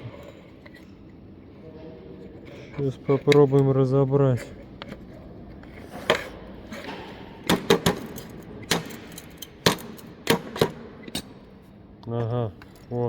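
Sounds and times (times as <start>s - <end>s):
metallic clicks and knocks: 7.4s - 11.3s.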